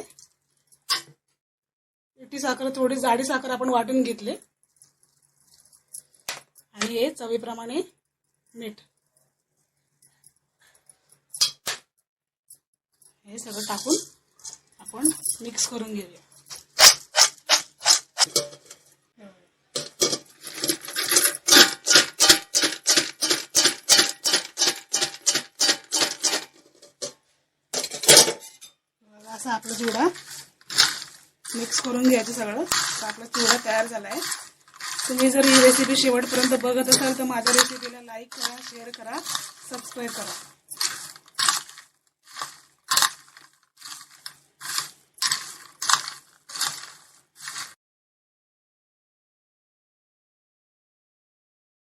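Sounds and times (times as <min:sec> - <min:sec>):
spoon scraping crisp food: 0:13.5 - 0:14.7, 0:16.4 - 0:18.9, 0:19.8 - 0:27.2, 0:29.4 - 0:47.8
dry snack rattling crunch: 0:16.4 - 0:18.8, 0:19.8 - 0:27.1, 0:29.4 - 0:47.8.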